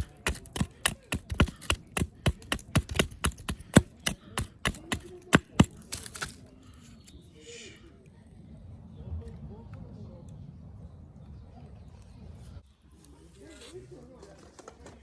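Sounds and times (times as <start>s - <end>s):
knife chopping on cutting board: 0.0s - 6.4s.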